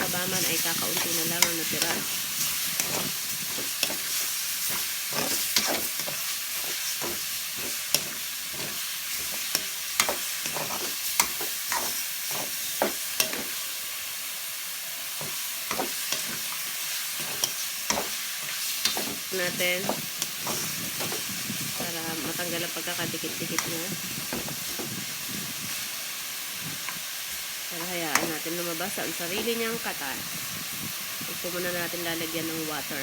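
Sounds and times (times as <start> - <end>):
utensil scraping a pan: 0.0 - 13.6, 15.2 - 25.8
meat sizzling in hot oil: 0.0 - 33.0.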